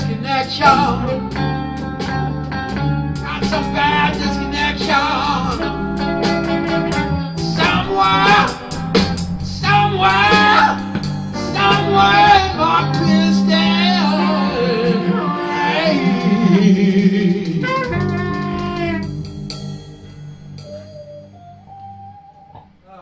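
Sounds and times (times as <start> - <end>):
man singing: 0.0 - 1.3, 3.2 - 8.8, 9.4 - 19.0
blues band playing: 0.0 - 22.8.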